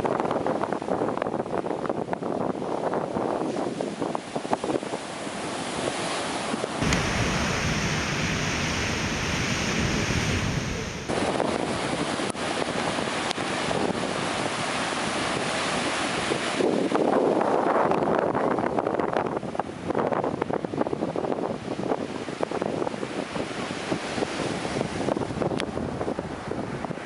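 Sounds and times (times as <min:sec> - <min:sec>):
surf breaking and washing: 0:05.4 - 0:17.0
wind buffeting microphone: 0:06.8 - 0:14.5.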